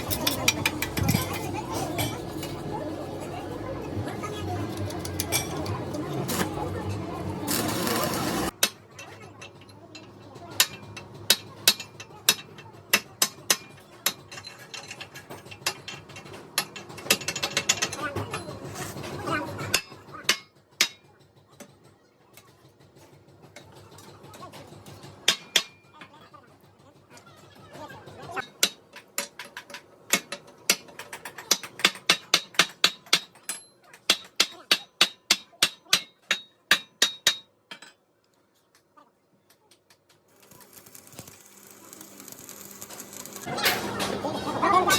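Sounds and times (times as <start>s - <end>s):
metal tools knocking and clicking: 0.0s - 2.6s, 4.7s - 6.0s, 8.5s - 18.7s, 23.6s - 26.1s, 28.4s - 38.0s
hammer striking metal: 25.3s - 25.9s, 28.4s - 37.9s.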